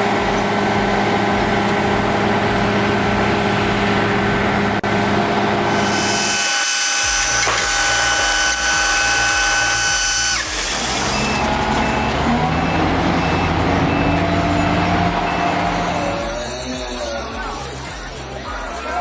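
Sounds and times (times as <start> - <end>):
diesel machinery whining: 0.4 - 18.6
reversing alarm beeps: 5.7 - 17.1.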